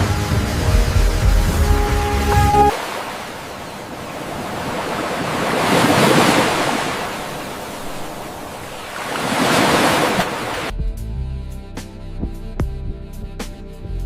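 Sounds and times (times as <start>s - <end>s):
waves rushing: 0.0s - 10.7s.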